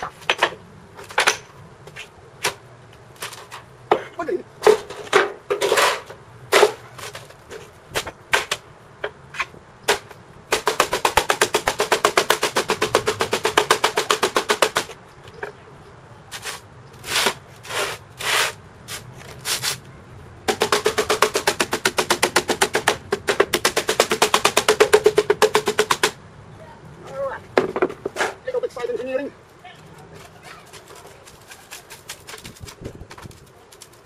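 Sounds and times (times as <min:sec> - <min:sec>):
rapid hammer tapping: 0:20.5 - 0:26.2.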